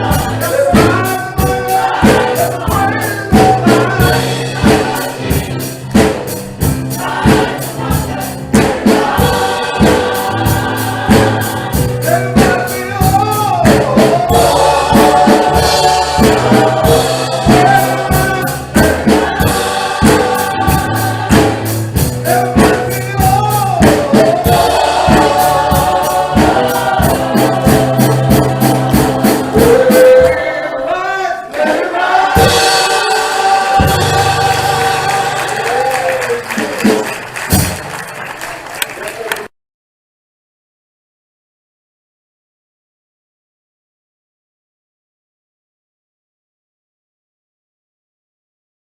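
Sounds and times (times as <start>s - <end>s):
steady percussion beat: 0.0s - 30.7s, 31.6s - 38.2s
choir singing gospel music: 0.0s - 38.5s.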